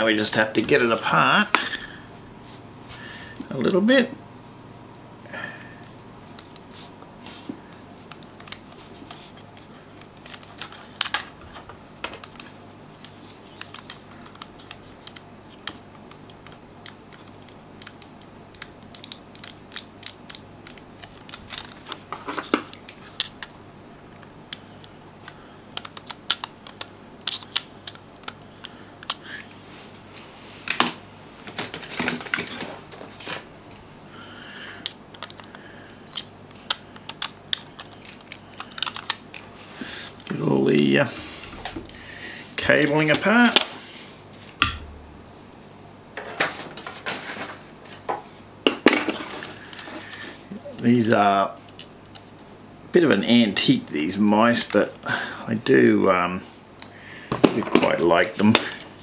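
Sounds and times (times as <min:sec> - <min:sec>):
plastic mouse parts clicking: 0:12.1 - 0:23.5, 0:25.8 - 0:28.4, 0:36.1 - 0:39.4.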